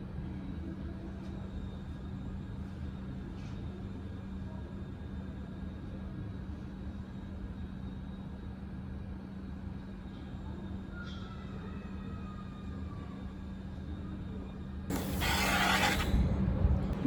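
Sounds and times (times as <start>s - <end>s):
faint high squeal: 10.5s - 14.2s, 14.9s - 16.2s.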